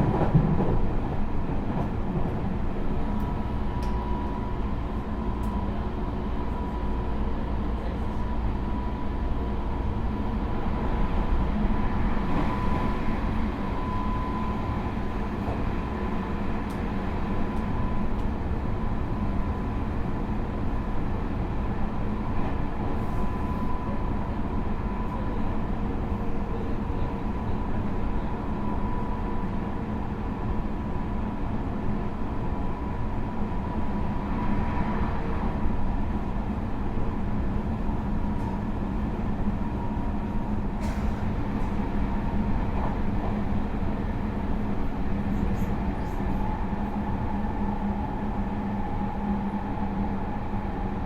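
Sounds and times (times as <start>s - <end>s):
wheels rumbling on rail: 0.0s - 51.0s.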